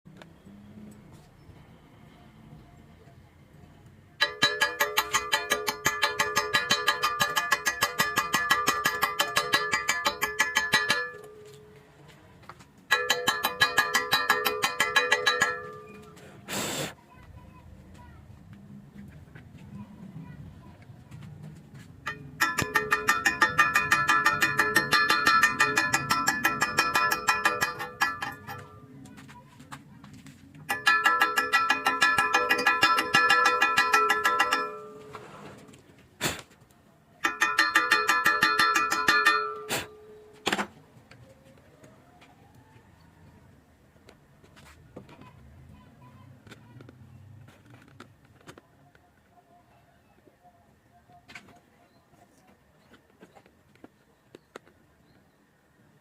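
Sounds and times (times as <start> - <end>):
music of rapid plucked notes: 4.2 - 11.4, 22.1 - 28.8.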